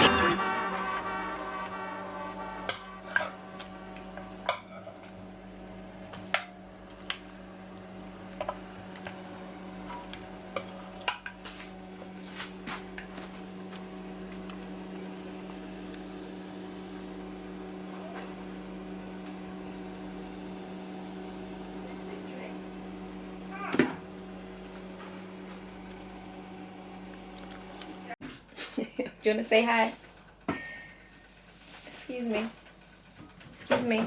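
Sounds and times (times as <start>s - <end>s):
steady low hum: 0.0s - 28.2s
dishes and pots clinking: 30.5s - 31.0s.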